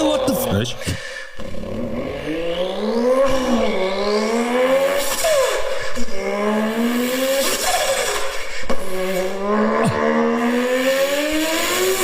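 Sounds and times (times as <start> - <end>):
man imitating car engine revving: 0.0 - 2.3, 9.2 - 10.7.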